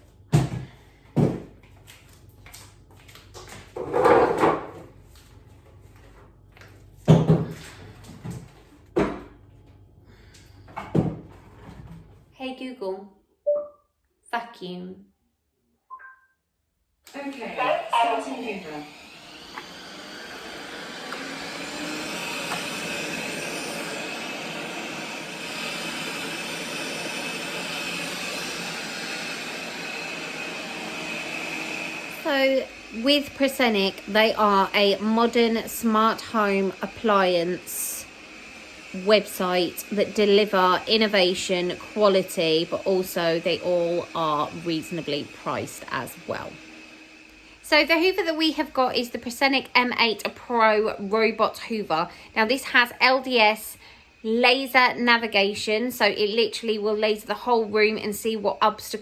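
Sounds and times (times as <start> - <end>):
chairs knocking on table: 3.8 - 4.9
robot vacuum motor whining: 17.1 - 59.0.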